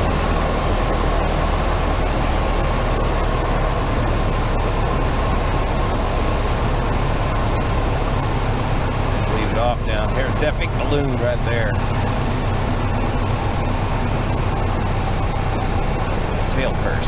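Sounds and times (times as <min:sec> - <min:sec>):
light plane engine and propeller: 0:00.0 - 0:17.0.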